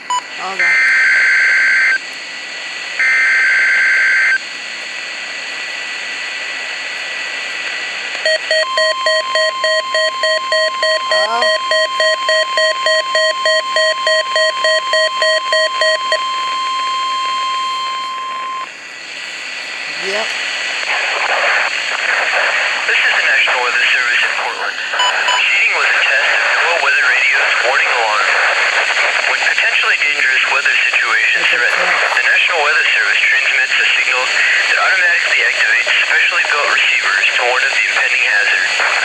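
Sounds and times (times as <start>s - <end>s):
digital data bursts from radio: 8.2s - 18.7s, 19.9s - 39.0s
steady warning alarm tone: 8.2s - 18.7s
static hiss: 18.6s - 39.0s.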